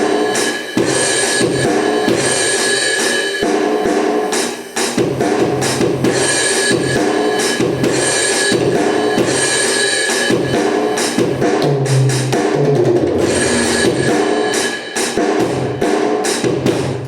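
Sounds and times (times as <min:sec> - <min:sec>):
backing track chords: 0:10.6 - 0:15.9
electronic drum hits: 0:11.2 - 0:14.6
deep bass note: 0:11.6 - 0:14.1.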